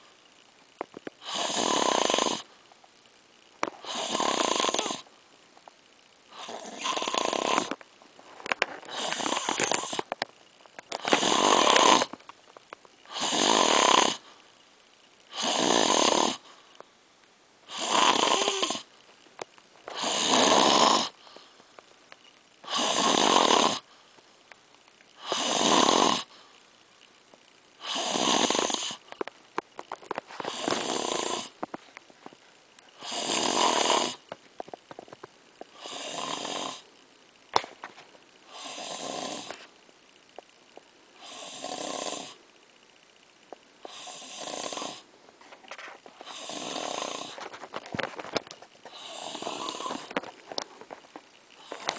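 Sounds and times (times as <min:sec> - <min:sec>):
quiet breaths: 0:00.0 - 0:51.9
rasping snores: 0:01.2 - 0:02.5, 0:03.8 - 0:05.1, 0:06.3 - 0:07.8, 0:08.8 - 0:10.2, 0:10.9 - 0:12.2, 0:13.1 - 0:14.3, 0:15.3 - 0:16.5, 0:17.7 - 0:18.9, 0:19.9 - 0:21.5, 0:22.6 - 0:23.9, 0:25.2 - 0:26.4, 0:27.8 - 0:29.1, 0:30.4 - 0:31.6, 0:33.0 - 0:34.2, 0:35.7 - 0:36.9, 0:38.5 - 0:39.7, 0:41.2 - 0:42.4, 0:43.8 - 0:45.1, 0:46.2 - 0:47.5, 0:48.9 - 0:50.3, 0:51.6 - 0:51.9.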